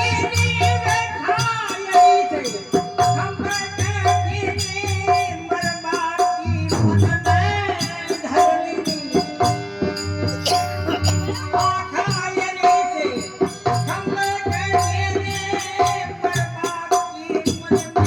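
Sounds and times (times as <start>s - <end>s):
folk melody with overtones: 9.0s - 13.8s.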